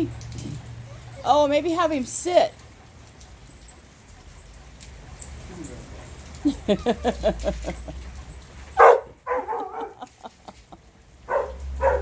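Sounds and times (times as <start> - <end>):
dog whining: 5.2 - 6.9
dog barking: 8.8 - 10.0, 11.3 - 12.0.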